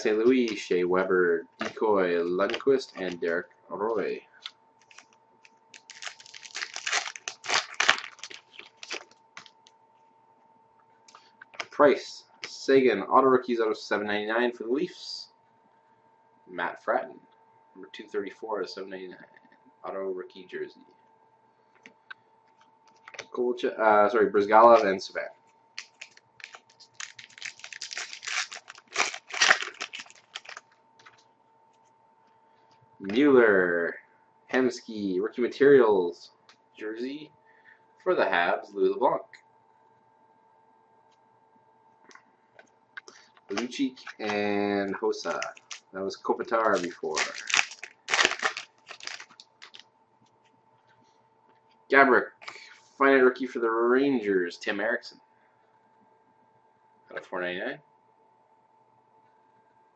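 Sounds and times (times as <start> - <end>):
faint steady hum: 0.0 - 59.9
cards and pack rustling: 1.6 - 3.3, 4.8 - 5.1, 5.7 - 9.6, 25.8 - 31.2, 43.1 - 45.8, 46.4 - 49.8
wrapper crinkling and tearing: 2.5 - 3.3, 4.8 - 9.6, 25.8 - 30.7, 45.2 - 45.9, 46.5 - 49.8.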